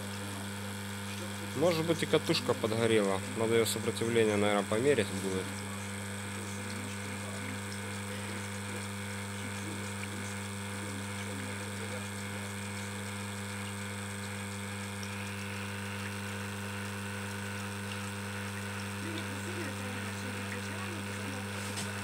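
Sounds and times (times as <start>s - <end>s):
pump humming steadily: 0.0s - 22.0s.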